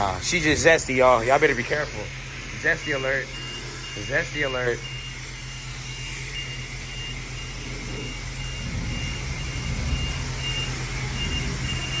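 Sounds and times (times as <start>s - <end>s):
reversing alarm beeping: 0.0s - 12.0s
low engine rumble: 6.6s - 12.0s.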